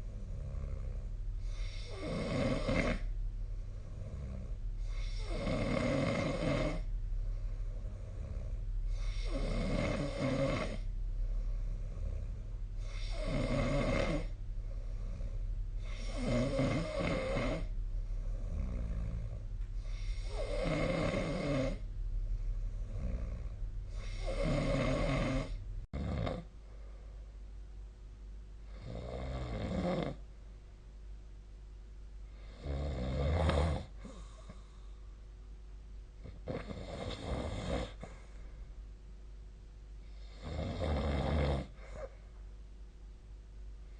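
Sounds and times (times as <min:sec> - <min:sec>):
person snoring: 0:00.0 - 0:21.9, 0:22.5 - 0:26.5, 0:28.7 - 0:30.2, 0:32.3 - 0:34.7, 0:36.3 - 0:38.3, 0:40.1 - 0:42.1
background hum: 0:00.0 - 0:43.9.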